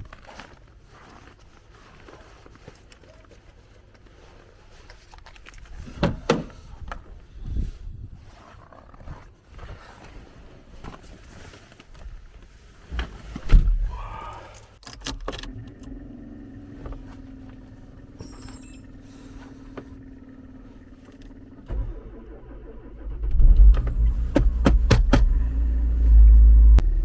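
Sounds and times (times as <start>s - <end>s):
handling noises: 0.0s - 7.5s.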